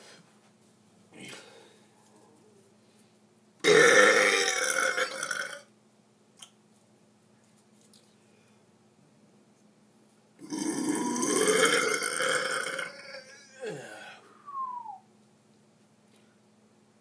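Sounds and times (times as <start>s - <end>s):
man burping loudly: 3.6s - 5.7s, 10.4s - 14.2s.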